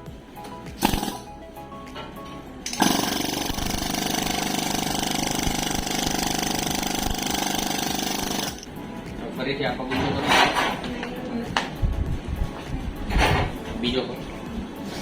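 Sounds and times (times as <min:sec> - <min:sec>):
small motor pulsing: 0:00.8 - 0:01.3, 0:02.7 - 0:08.7.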